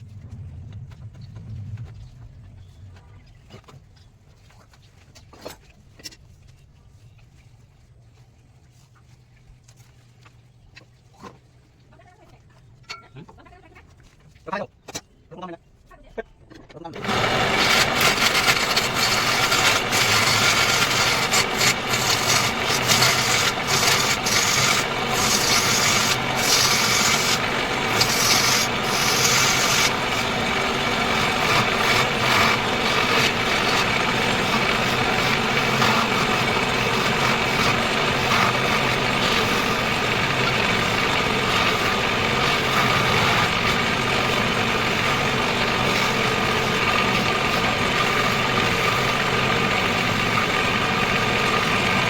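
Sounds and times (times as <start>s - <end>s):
wood lathe cutting wood: 17.0s - 52.0s.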